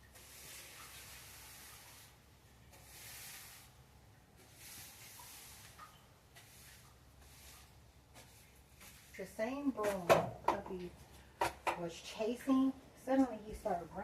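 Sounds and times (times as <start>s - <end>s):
broom sweeping swishes: 0.2s - 3.8s, 4.4s - 9.2s.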